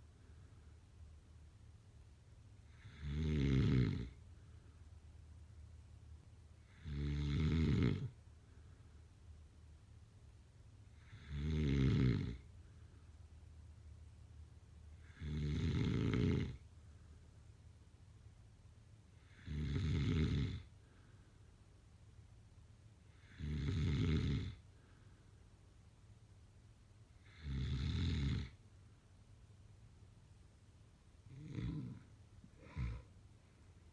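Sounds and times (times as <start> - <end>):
snoring with low rattle: 2.6 - 4.2, 6.6 - 8.2, 11.0 - 12.5, 15.0 - 16.6, 19.2 - 20.7, 23.1 - 24.6, 27.2 - 28.6, 31.3 - 33.1.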